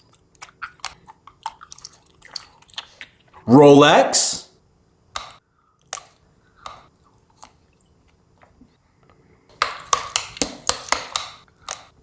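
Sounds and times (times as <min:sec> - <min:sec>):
person chewing food: 0:00.0 - 0:03.4, 0:05.2 - 0:08.7, 0:09.6 - 0:12.0.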